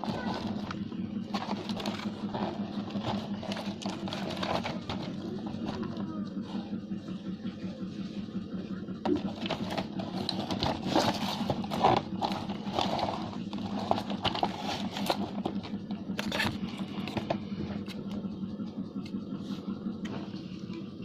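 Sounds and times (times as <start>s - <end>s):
plastic clicking and rattling: 0.0s - 6.1s, 9.0s - 18.2s
toy train motor whirring: 9.3s - 17.0s.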